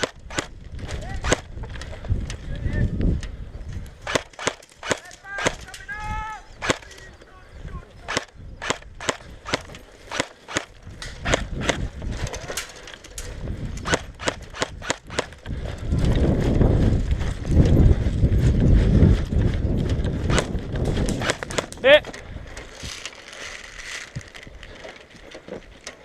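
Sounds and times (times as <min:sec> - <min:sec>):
airsoft gun shots: 0:00.0 - 0:00.6, 0:01.2 - 0:01.5, 0:04.0 - 0:05.7, 0:06.6 - 0:06.9, 0:08.0 - 0:11.9, 0:13.8 - 0:15.4, 0:21.1 - 0:21.8
low rumble on microphone: 0:15.3 - 0:22.6.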